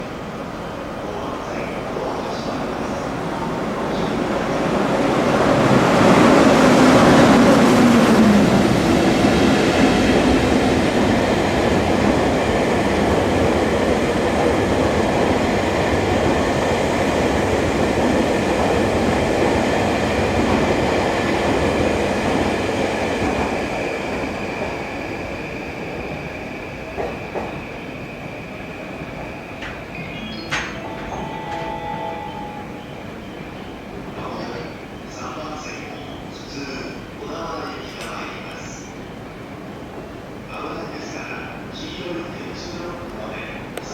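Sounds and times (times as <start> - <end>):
electric locomotive passing: 0.0 - 43.9
train wheels rumbling over rails: 1.9 - 31.8.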